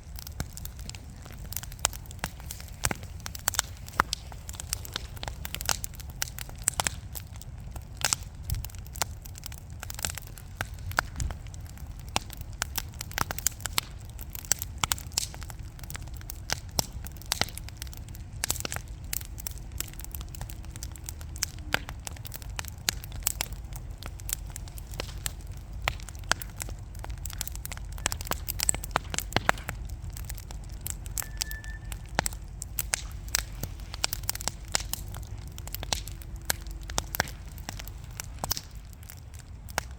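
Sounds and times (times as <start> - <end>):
low fire rumble: 0.0 - 39.9
wood fire crackling and popping: 0.0 - 39.9.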